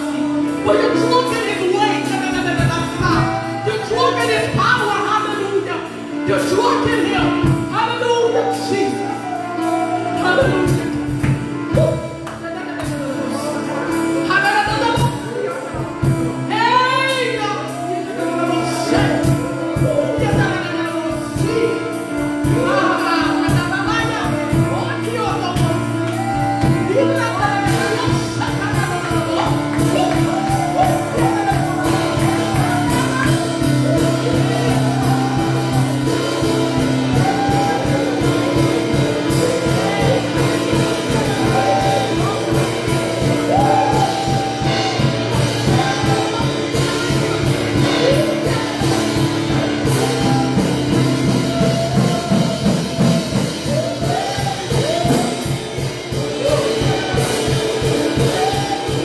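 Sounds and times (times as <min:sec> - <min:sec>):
held keyboard chords: 0:00.0 - 0:59.0
voices singing: 0:00.0 - 0:59.0
steady beat: 0:17.8 - 0:59.0.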